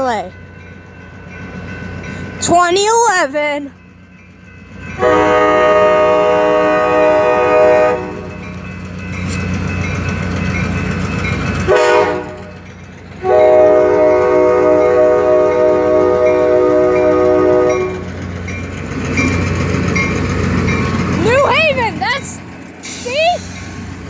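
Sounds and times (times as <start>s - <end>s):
locomotive diesel engine rumbling: 0.0s - 24.0s
locomotive air horn blasts: 5.0s - 8.4s, 11.7s - 12.6s, 13.2s - 18.1s.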